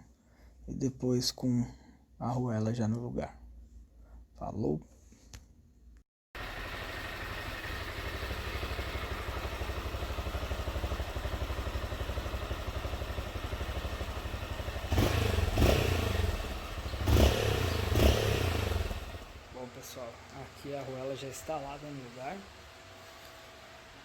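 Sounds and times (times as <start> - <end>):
motorcycle engine idling and revving: 6.4 - 24.0.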